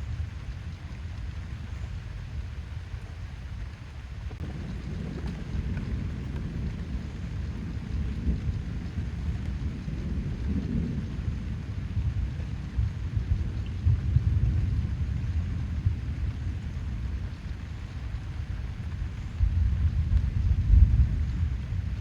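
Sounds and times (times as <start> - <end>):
rain on foliage: 0.0 - 22.0.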